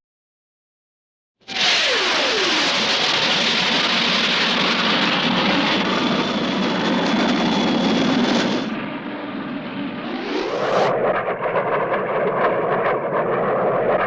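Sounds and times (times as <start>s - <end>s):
cartoon rocket thruster hiss: 1.5s - 4.6s.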